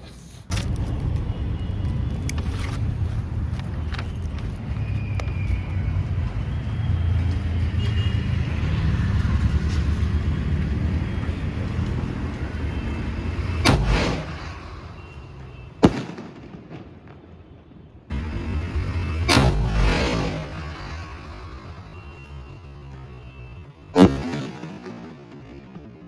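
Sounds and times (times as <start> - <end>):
loud noise: 8.0 - 16.4, 18.1 - 26.0
firework launch thump: 13.6 - 15.0, 15.8 - 17.2, 19.2 - 21.4, 24.0 - 25.1
firework shell bang: 13.6 - 15.0, 15.8 - 17.2, 19.2 - 21.0
steady low rumble: 18.1 - 24.0.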